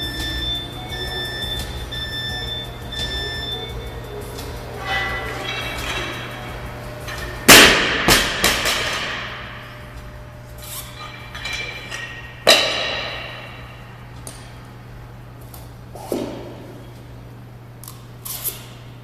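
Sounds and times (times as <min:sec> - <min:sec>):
metal plates ringing: 0:00.0 - 0:14.1
barbell dropped on floor: 0:07.1 - 0:09.6.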